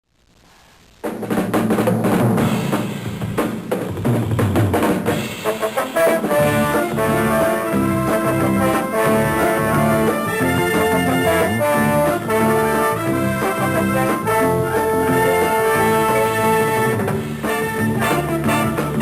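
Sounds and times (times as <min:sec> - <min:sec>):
drum kit: 0:00.4 - 0:19.0
band playing: 0:04.0 - 0:19.0
held chords: 0:05.9 - 0:19.0.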